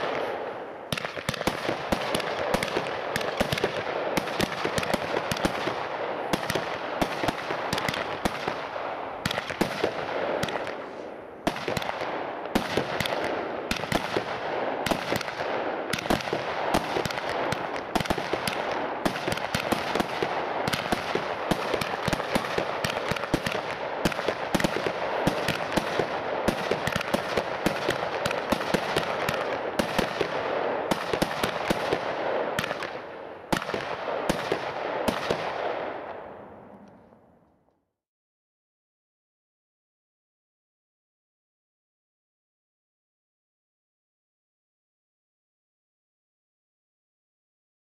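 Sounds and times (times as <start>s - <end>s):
fireworks cake firing shots: 0.0s - 36.2s
fireworks crackle: 9.3s - 15.4s, 16.0s - 33.0s.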